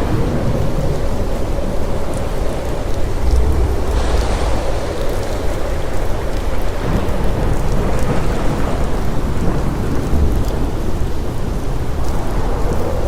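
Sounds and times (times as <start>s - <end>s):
ocean waves breaking: 2.6s - 10.0s.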